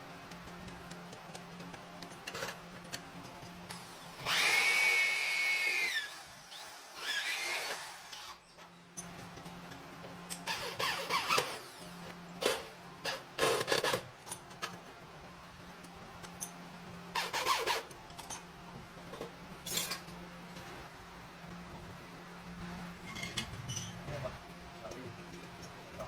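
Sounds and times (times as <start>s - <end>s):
steady low hum: 8.4s - 26.0s
metal parts scraping and clattering: 19.1s - 20.1s, 23.0s - 24.1s.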